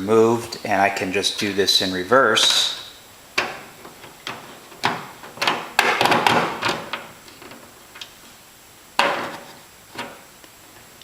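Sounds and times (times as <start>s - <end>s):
metal bolt and washers clicking: 3.4s - 8.2s.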